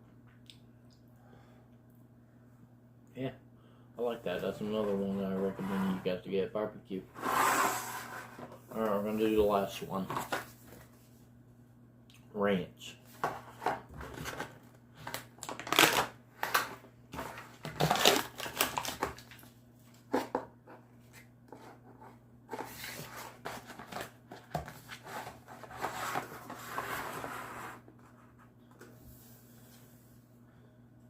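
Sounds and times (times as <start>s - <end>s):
foil and chips rustling: 14.2s - 19.5s.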